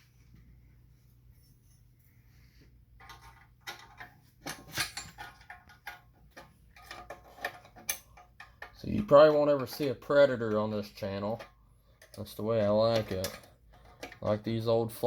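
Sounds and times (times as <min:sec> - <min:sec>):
low steady hum: 0:00.0 - 0:15.0
metal tools clinking and clattering: 0:03.0 - 0:14.4.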